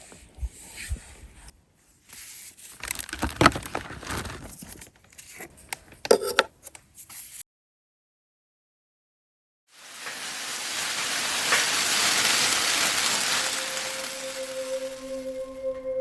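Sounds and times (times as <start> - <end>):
packaging rustling and crinkling: 2.7 - 5.5, 9.8 - 15.6.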